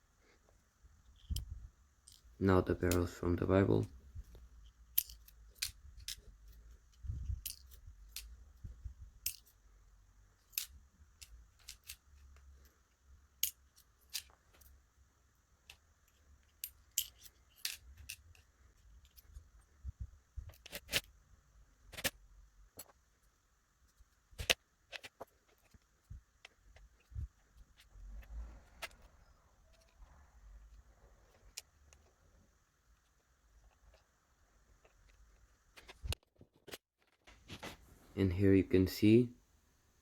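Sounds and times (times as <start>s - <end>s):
small metal pins clicking: 4.6s - 6.7s, 7.3s - 8.4s, 9.2s - 9.6s, 10.4s - 12.4s, 13.4s - 14.8s, 15.6s - 19.4s.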